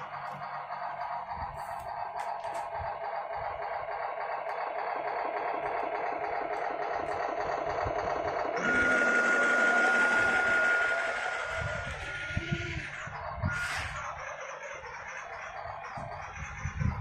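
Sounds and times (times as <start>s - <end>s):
model truck engine chattering: 0.0s - 17.0s
hiss with steady whistle: 8.6s - 12.2s.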